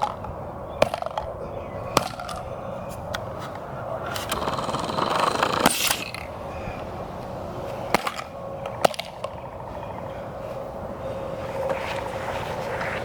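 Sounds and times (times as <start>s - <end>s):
sharp metallic clicks: 4.2s - 6.2s.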